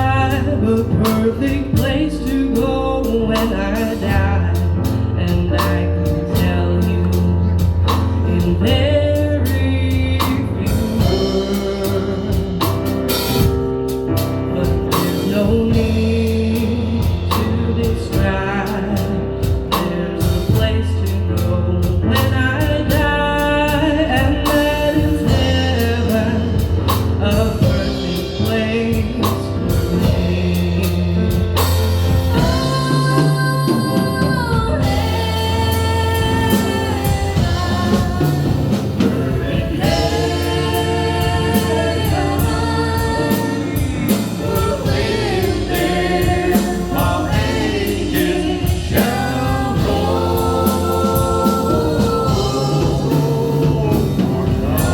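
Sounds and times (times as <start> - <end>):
instrumental backing with beat: 0.0 - 54.9
person singing: 32.3 - 54.9.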